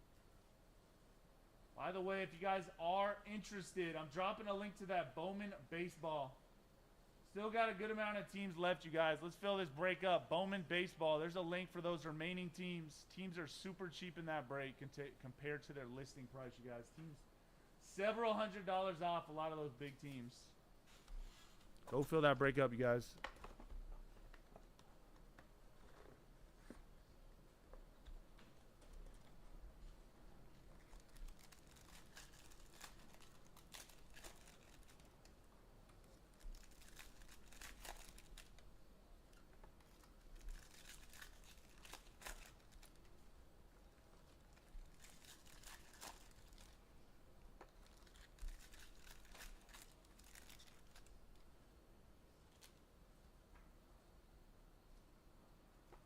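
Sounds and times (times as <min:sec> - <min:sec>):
wrapper tearing and crinkling: 0:30.8 - 0:35.4, 0:36.0 - 0:38.6, 0:39.8 - 0:43.2, 0:44.2 - 0:46.8, 0:47.7 - 0:51.2.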